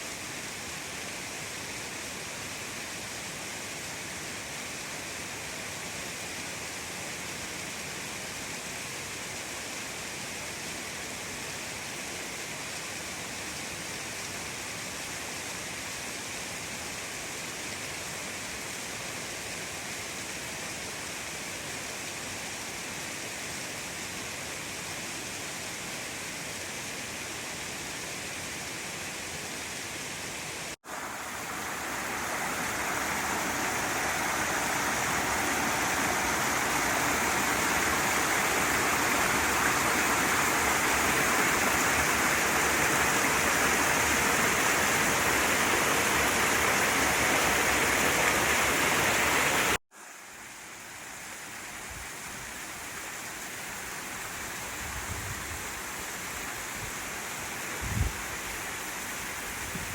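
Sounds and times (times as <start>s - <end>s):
waterfall roaring: 29.7s - 49.8s.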